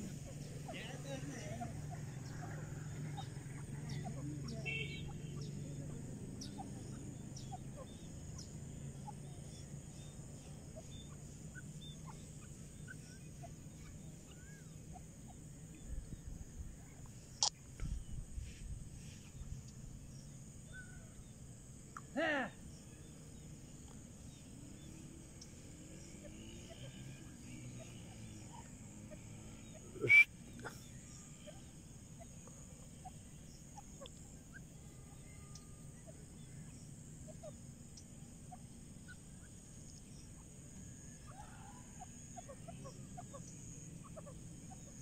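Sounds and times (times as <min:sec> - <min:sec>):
faint bird chirps: 0:00.0 - 0:45.0
harsh animal call: 0:26.2 - 0:33.2.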